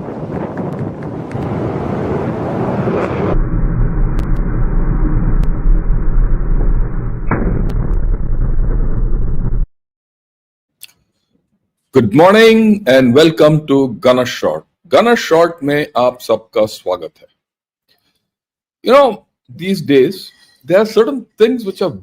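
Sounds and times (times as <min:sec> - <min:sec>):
whooshing rush: 0:00.0 - 0:09.6
deep artillery-like rumble: 0:00.0 - 0:09.7
cracks: 0:04.1 - 0:04.5, 0:07.2 - 0:09.6.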